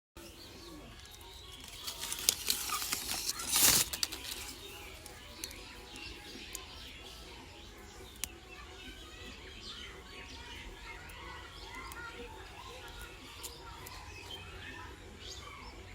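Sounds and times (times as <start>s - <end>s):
birds chirping: 0.2s - 15.9s
loud rustling burst: 1.9s - 4.6s.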